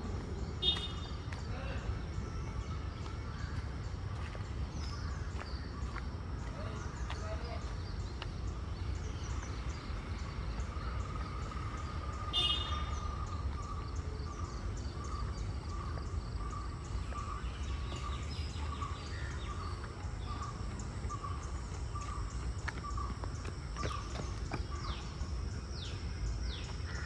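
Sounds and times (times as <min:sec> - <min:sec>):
birds calling: 0:00.6 - 0:01.3, 0:12.2 - 0:27.0
bird repeating single note: 0:12.4 - 0:12.9.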